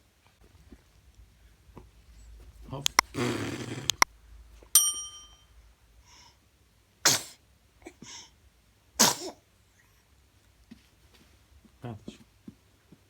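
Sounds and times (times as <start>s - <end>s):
baby sneezing: 7.0s - 8.1s, 9.0s - 9.4s.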